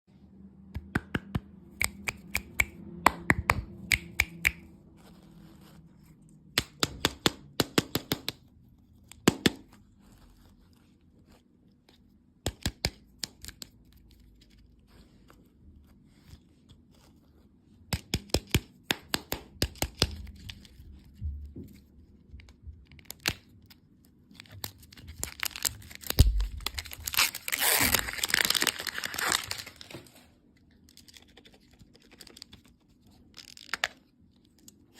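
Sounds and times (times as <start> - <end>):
taps and clicks on packaging: 6.5 - 8.4, 17.9 - 20.6
wrapper crinkling and tearing: 24.3 - 34.1.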